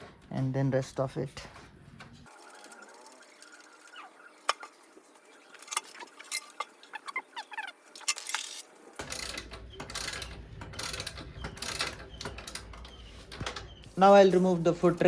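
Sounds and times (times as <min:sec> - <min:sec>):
clattering and rustling work noise: 0:00.0 - 0:15.0
birds chirping: 0:02.3 - 0:08.0.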